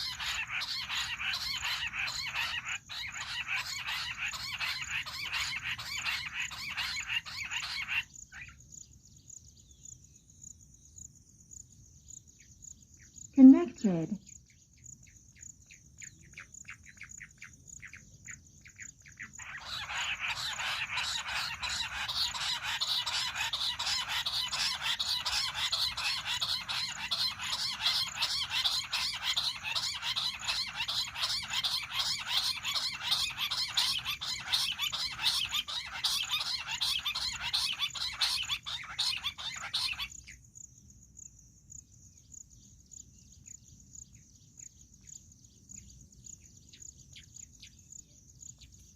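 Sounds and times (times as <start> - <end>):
faint quail calls: 0.0 - 8.6, 15.7 - 40.4
rapid quail chattering: 0.0 - 8.7, 15.1 - 40.4.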